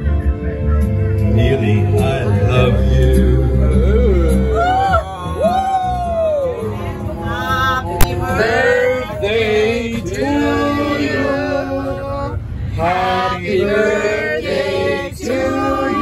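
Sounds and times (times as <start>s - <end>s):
man and woman singing with music: 1.3s - 5.8s, 6.6s - 16.0s.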